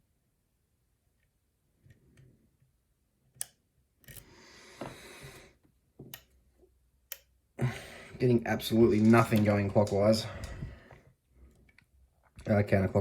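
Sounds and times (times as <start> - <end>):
lock pick clicks and ticks: 3.4 - 4.3, 6.1 - 6.4, 7.1 - 7.4.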